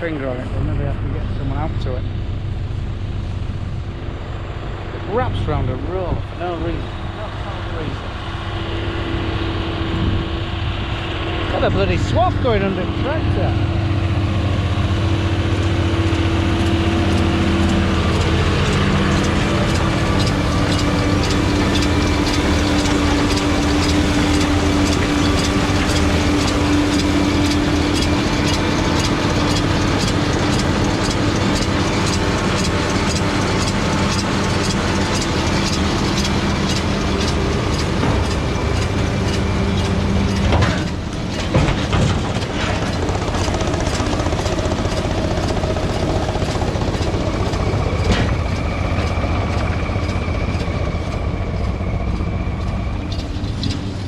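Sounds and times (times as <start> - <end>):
tractor engine running: 0.0 - 54.0
baler mechanical clatter: 11.5 - 54.0.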